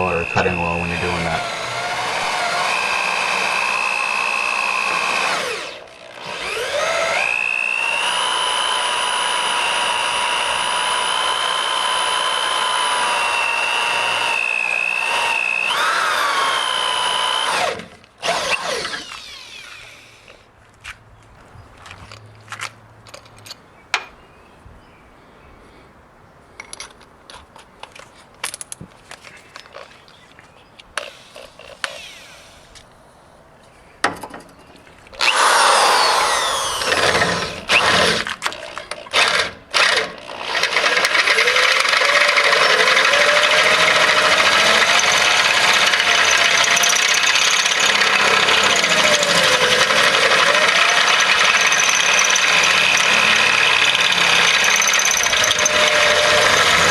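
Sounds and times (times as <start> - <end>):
power drill whining into metal: 0.0 - 20.5, 31.0 - 32.8, 35.2 - 56.9.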